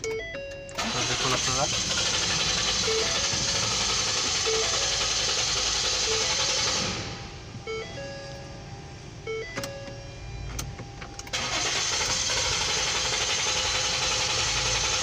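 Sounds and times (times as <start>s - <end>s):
warning chime beeping: 0.0s - 11.6s
car engine cranking: 0.0s - 15.0s.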